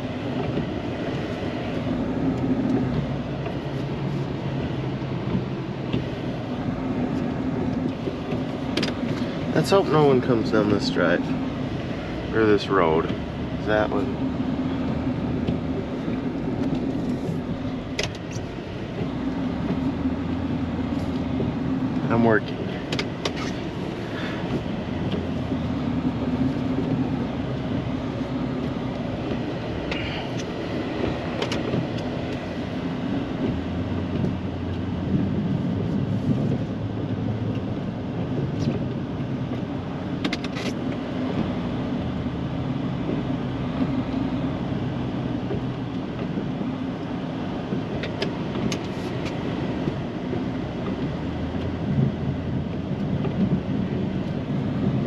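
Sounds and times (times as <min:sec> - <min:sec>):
truck engine running: 0:00.0 - 0:55.0.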